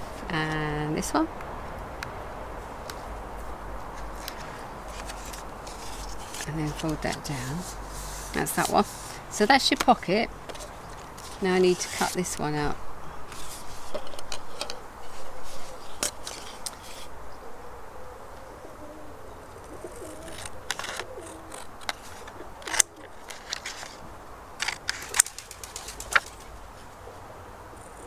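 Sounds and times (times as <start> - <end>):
scissors snipping paper: 4.0 - 12.7, 20.1 - 24.0, 24.6 - 26.4.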